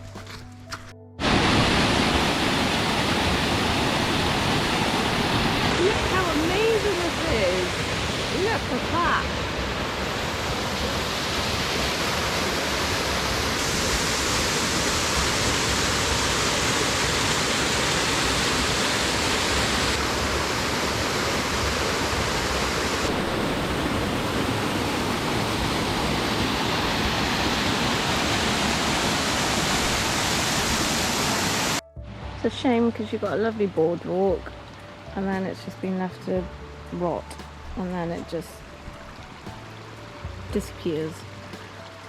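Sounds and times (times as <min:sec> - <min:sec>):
waterfall rushing: 0:01.2 - 0:31.8.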